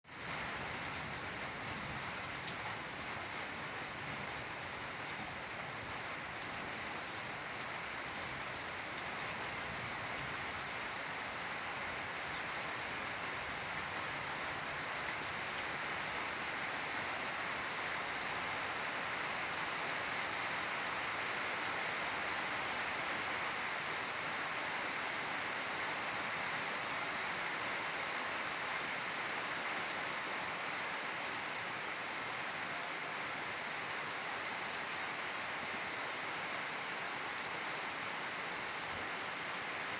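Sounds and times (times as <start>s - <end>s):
steady rain hiss: 0.0s - 39.9s
faint raindrop ticks: 1.9s - 3.4s.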